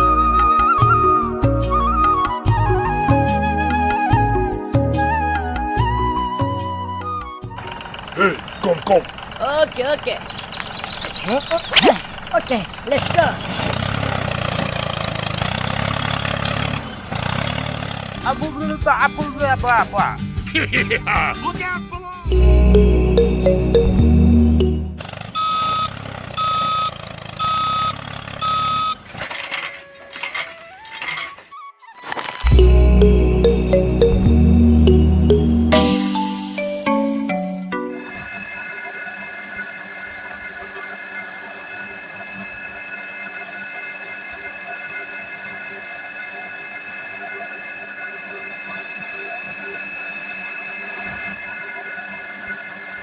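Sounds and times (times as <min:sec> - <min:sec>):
clattering with rising tone: 0:05.0 - 0:18.8, 0:22.3 - 0:35.8, 0:38.0 - 0:53.0
low motor hum: 0:22.3 - 0:29.2, 0:32.5 - 0:35.8
small electric motor whining: 0:25.0 - 0:32.6, 0:38.0 - 0:53.0
reversing alarm beeping: 0:25.4 - 0:31.3, 0:37.9 - 0:53.0.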